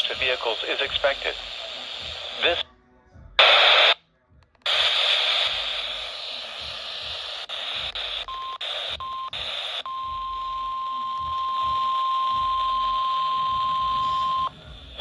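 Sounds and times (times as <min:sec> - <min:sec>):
radio static hiss: 0:00.0 - 0:02.6, 0:03.4 - 0:04.0, 0:04.6 - 0:15.0.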